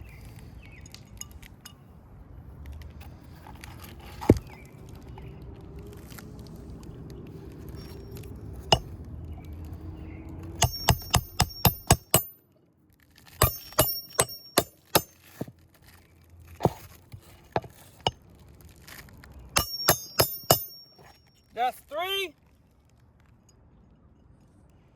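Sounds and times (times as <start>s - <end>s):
hammer striking nail: 10.6s - 12.4s, 13.4s - 15.5s, 16.6s - 16.9s, 19.6s - 21.2s.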